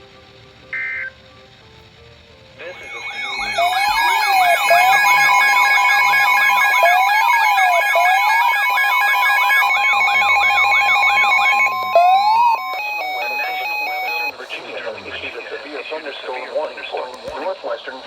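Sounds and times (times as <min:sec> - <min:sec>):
faint stepping beeps: 0:02.6 - 0:14.4
held beeps: 0:02.6 - 0:14.4
siren-like wail: 0:02.6 - 0:14.4
steady high alert tone: 0:02.6 - 0:14.4.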